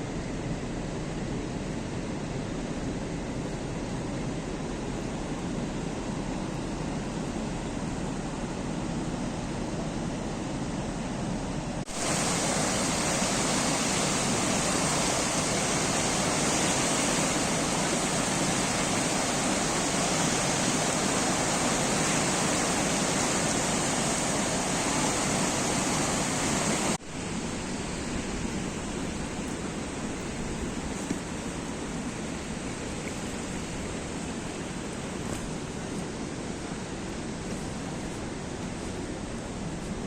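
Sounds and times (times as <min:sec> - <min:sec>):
rushing water: 0:11.8 - 0:38.8.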